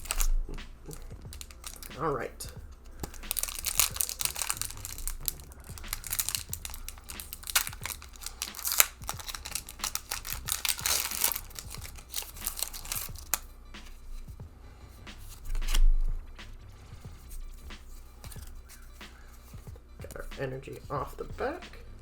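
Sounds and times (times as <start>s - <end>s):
foil pack crinkling and tearing: 0.0s - 2.2s, 2.9s - 13.5s, 18.2s - 19.4s.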